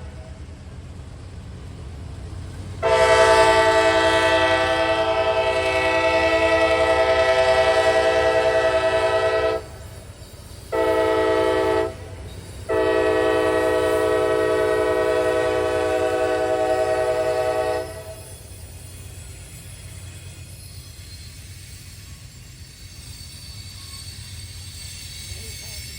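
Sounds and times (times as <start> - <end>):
low train rumble: 0.0 - 25.9
locomotive air horn: 2.8 - 9.8, 10.7 - 18.3.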